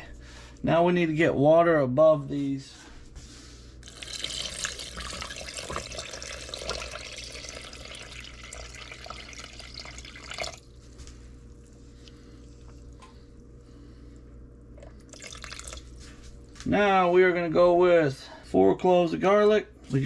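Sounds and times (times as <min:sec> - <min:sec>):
water running into a pot: 0:03.8 - 0:10.8, 0:14.8 - 0:16.0.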